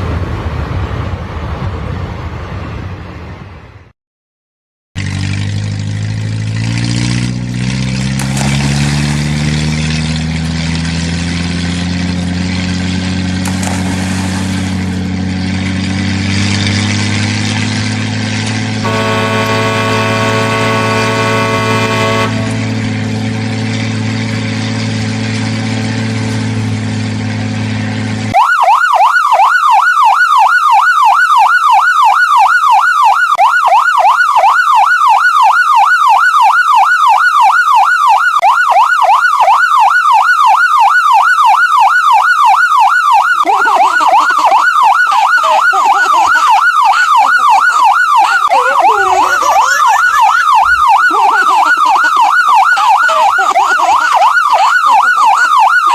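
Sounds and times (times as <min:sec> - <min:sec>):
electronic siren yelping: 0:18.8 - 0:23.1, 0:28.4 - 0:55.9.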